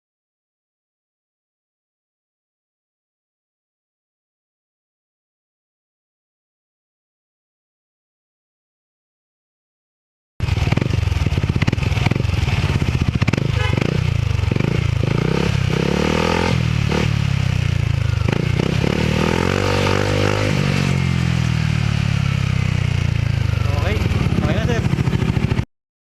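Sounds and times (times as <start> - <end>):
scooter engine revving and idling: 10.4 - 25.7.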